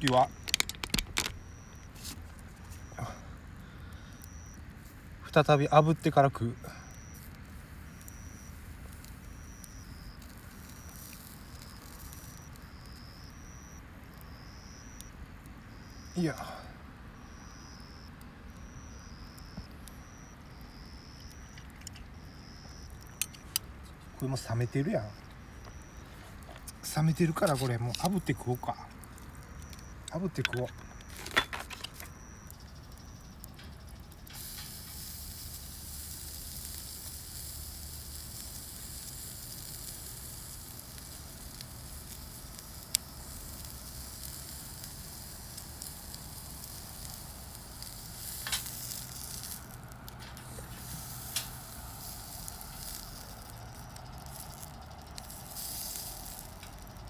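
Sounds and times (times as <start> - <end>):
steak sizzling: 0.0 - 2.2, 7.0 - 15.1, 18.7 - 21.6, 22.2 - 57.0.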